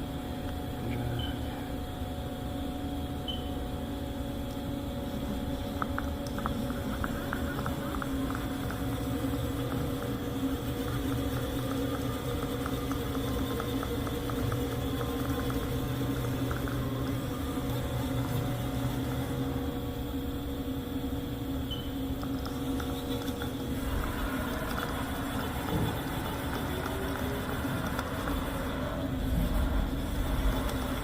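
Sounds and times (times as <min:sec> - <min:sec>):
steady machinery hum: 0:00.0 - 0:31.0
light irregular ticks: 0:05.6 - 0:17.4.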